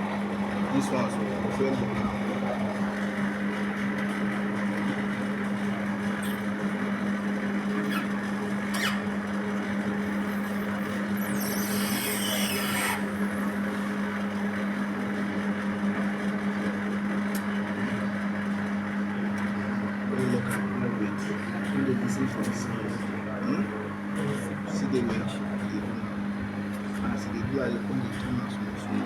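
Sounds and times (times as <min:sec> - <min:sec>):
air conditioner compressor hum: 0:00.0 - 0:29.0.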